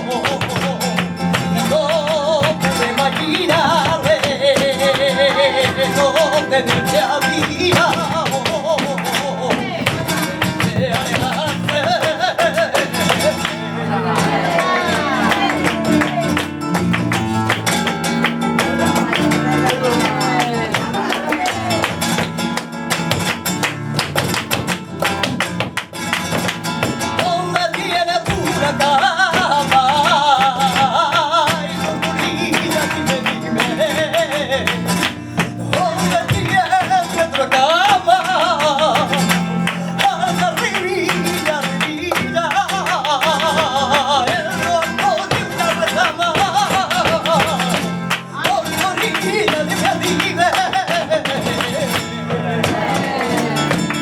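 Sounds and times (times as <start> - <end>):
acoustic flamenco guitar: 0.0 - 54.0
sharp percussive taps: 0.0 - 54.0.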